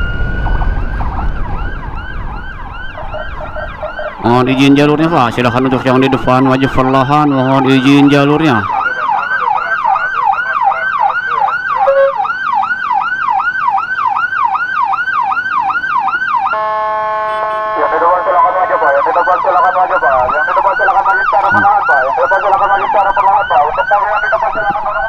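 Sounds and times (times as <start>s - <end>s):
electronic siren yelping: 0.0s - 25.0s
steady horn-like siren tone: 0.0s - 25.0s.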